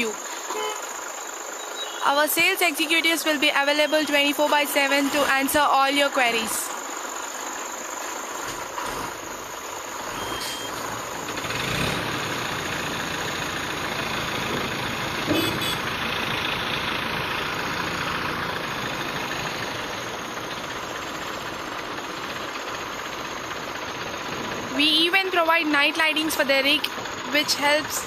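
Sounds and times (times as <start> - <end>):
heavy engine idling: 0.0 - 28.0.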